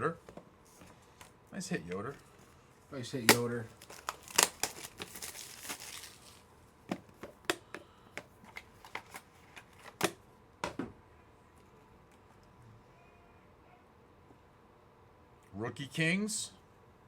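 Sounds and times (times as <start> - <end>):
cards rustling: 3.1 - 7.6, 8.2 - 10.1.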